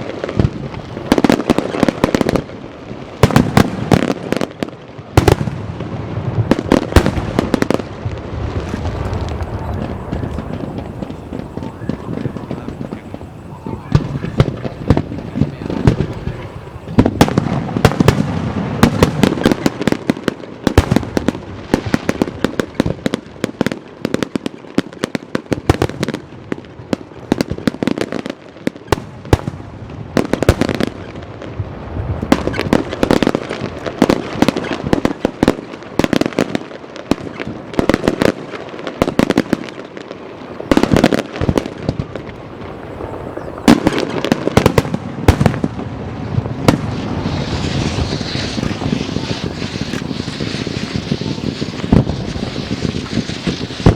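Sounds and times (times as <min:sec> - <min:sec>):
fireworks bangs and crackles: 0:00.0 - 0:53.9.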